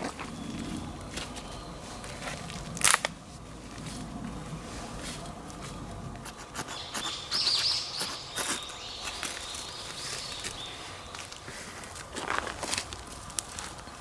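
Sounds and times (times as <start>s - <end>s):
songbird whistling: 6.7s - 11.2s.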